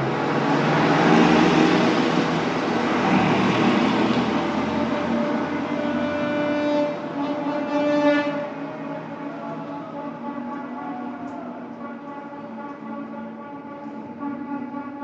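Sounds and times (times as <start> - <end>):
garbage truck running: 0.0 - 11.9.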